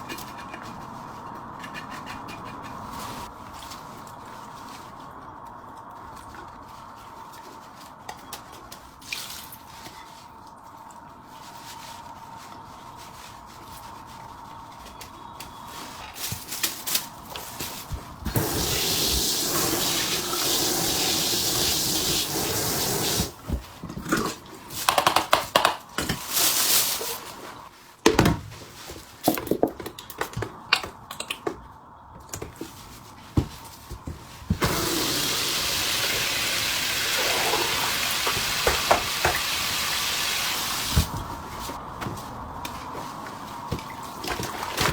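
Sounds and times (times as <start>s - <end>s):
tap running water: 18.3s - 23.4s, 34.5s - 41.2s.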